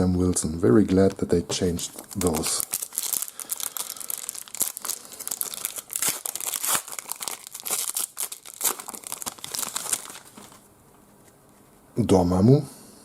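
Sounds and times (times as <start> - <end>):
foil wrapper tearing and crinkling: 1.9 - 10.6.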